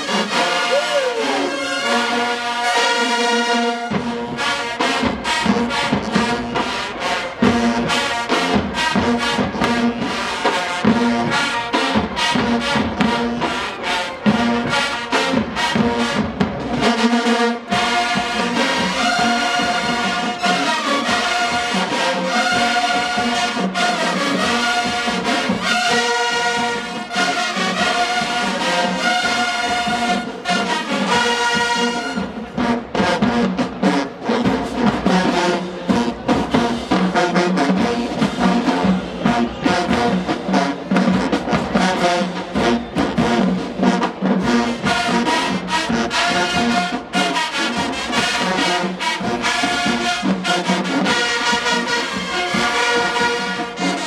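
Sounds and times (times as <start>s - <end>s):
marching band brass music: 0.0s - 54.0s
heavy drum hits: 9.6s - 10.3s.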